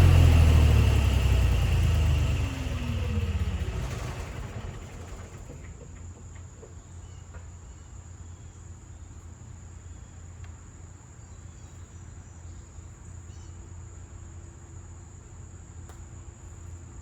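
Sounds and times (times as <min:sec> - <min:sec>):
low steady rumble: 0:00.0 - 0:05.9.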